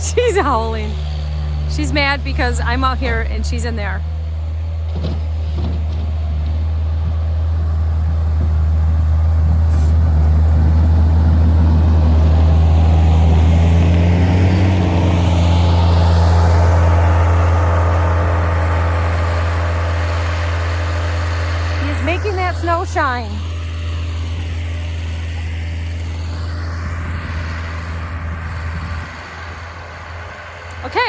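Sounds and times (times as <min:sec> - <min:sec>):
skid steer engine running: 0:00.0 - 0:31.0.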